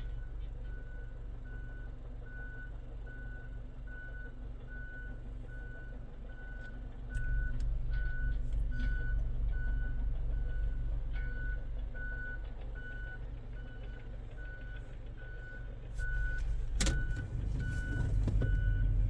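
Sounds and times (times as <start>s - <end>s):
vehicle reversing alarm beeping: 0.0s - 19.0s
low rumble: 7.0s - 14.9s.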